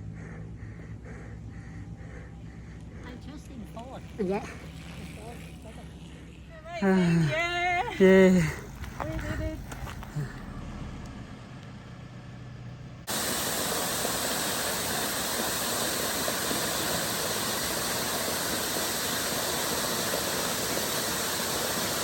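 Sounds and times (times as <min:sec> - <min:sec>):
waterfall rushing: 0:13.1 - 0:22.0.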